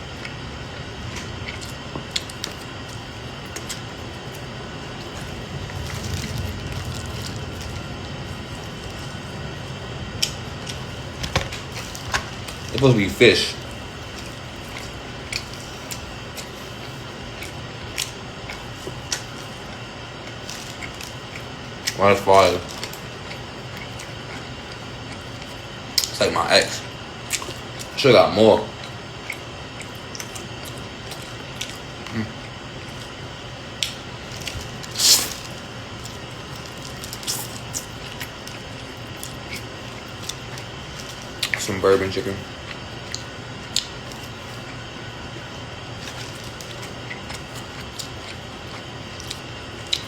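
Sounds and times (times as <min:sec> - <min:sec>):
chewing: 0:00.0 - 0:28.0, 0:28.7 - 0:41.8, 0:42.4 - 0:50.0
steady low hiss: 0:00.0 - 0:50.0
crisp crackly bite: 0:00.1 - 0:26.2, 0:28.8 - 0:50.0.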